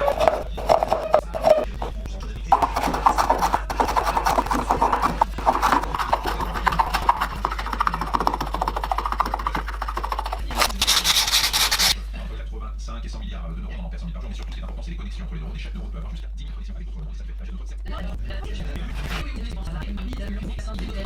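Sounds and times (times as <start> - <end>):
hand rubbing wooden bowl: 0.0 - 12.0.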